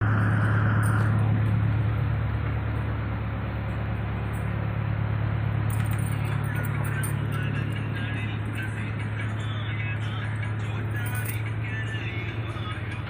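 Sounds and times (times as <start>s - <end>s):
wash of noise: 0.0s - 6.4s
boat engine humming: 0.0s - 13.0s.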